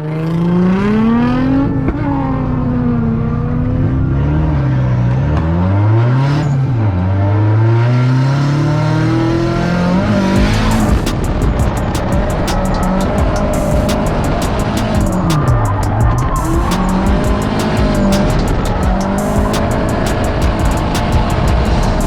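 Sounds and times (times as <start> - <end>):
car engine revving: 0.0 - 22.0
rapid sharp clicks: 10.3 - 22.0.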